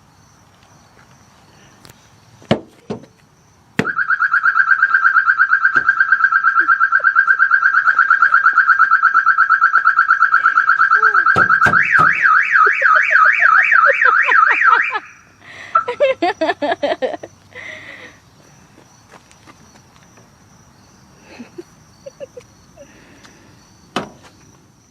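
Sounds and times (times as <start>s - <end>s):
car alarm: 3.8s - 16.1s.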